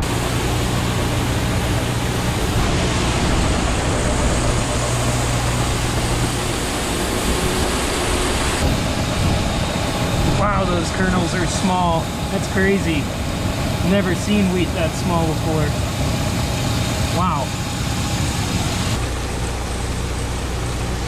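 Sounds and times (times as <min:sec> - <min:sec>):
loud even rushing noise: 0:00.0 - 0:19.1
low engine hum: 0:00.0 - 0:21.0.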